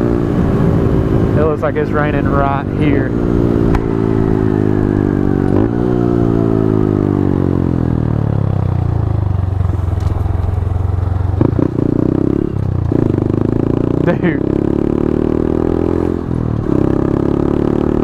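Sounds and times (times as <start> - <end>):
motorcycle engine: 0.0 - 18.0.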